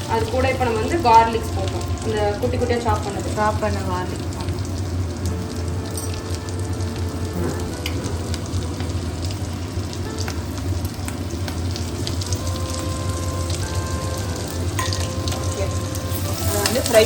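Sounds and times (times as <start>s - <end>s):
garlic sizzling in butter: 0.0s - 17.0s.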